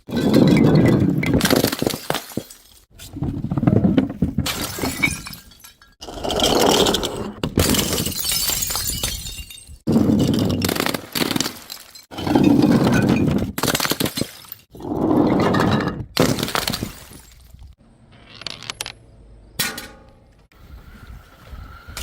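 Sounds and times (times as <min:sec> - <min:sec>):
glass bottles breaking: 0:00.1 - 0:02.9, 0:04.4 - 0:06.5, 0:07.5 - 0:14.7, 0:15.6 - 0:17.6.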